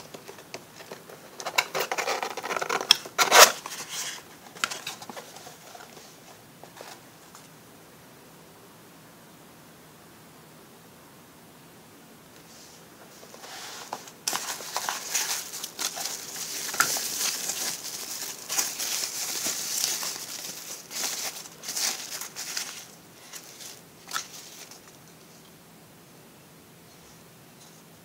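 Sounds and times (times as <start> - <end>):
packaging crinkling: 0.0 - 6.1, 13.3 - 25.0.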